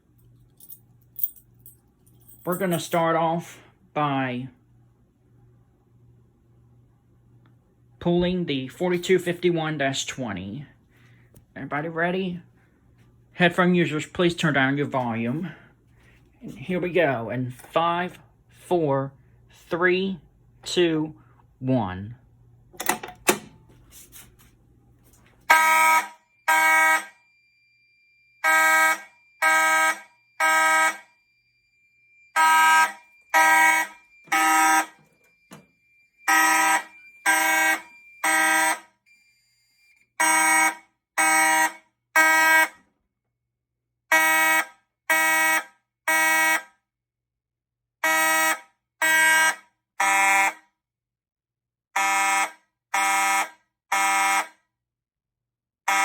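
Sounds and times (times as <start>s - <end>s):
fire alarm horn blasts: 25.4s - 42.9s, 44.1s - 46.8s, 48.0s - 50.8s, 51.9s - 54.6s.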